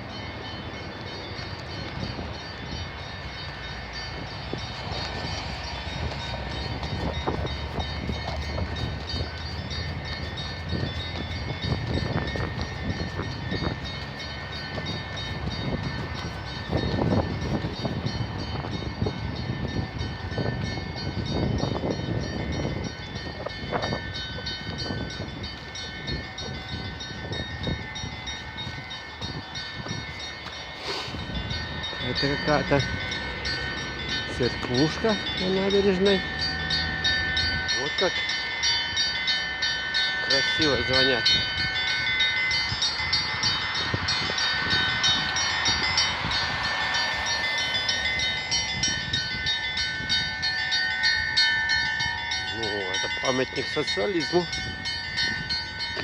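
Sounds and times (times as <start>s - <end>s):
church bells ringing: 0.0s - 56.0s
steady low rumble: 41.2s - 53.2s.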